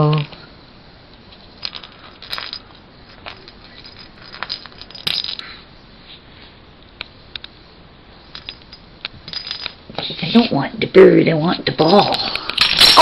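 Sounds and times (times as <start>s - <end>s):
toy balls clattering on hard surface: 1.6s - 5.5s, 8.3s - 9.8s.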